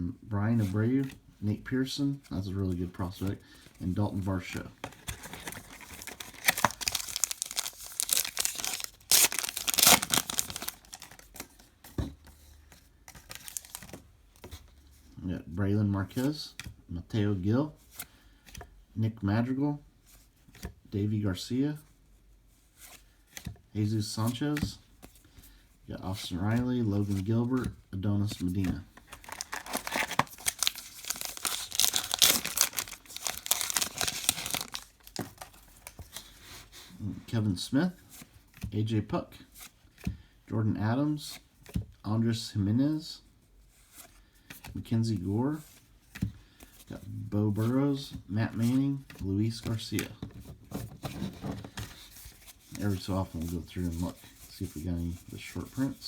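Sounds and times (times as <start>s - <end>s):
foil wrapper crinkling and tearing: 5.1s - 11.4s, 13.3s - 13.9s, 29.1s - 35.9s.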